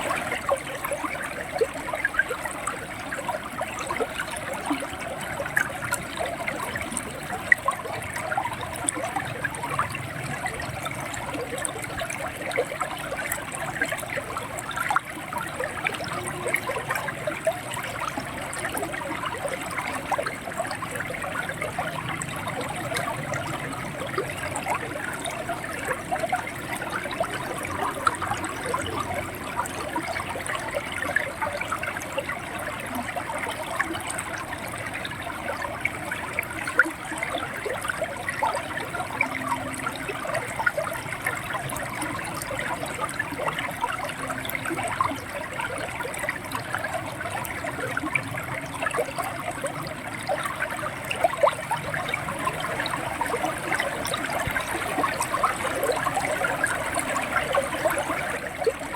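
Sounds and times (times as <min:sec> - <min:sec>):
river water over stones: 0:00.0 - 0:58.9.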